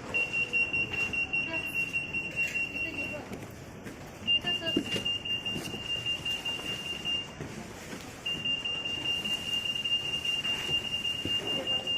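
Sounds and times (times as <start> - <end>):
anti-theft gate alarm tone: 0.0 - 3.3, 4.2 - 7.4, 8.2 - 11.9.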